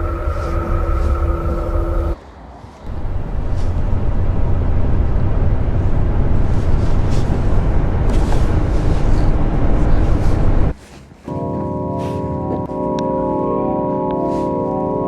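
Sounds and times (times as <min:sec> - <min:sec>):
deep steady rumbling: 0:00.0 - 0:02.2, 0:02.9 - 0:10.8.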